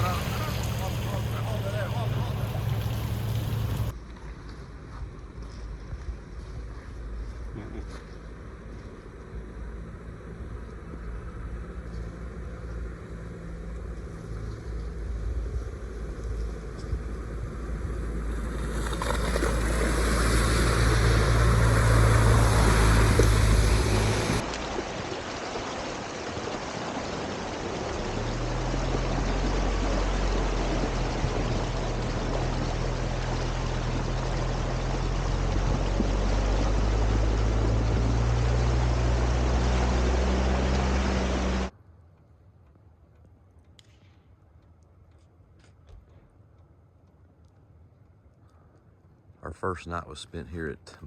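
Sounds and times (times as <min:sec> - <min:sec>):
steady rushing noise: 0:00.0 - 0:03.9, 0:15.2 - 0:41.7
vehicle engine while driving: 0:00.0 - 0:04.0, 0:06.5 - 0:41.7.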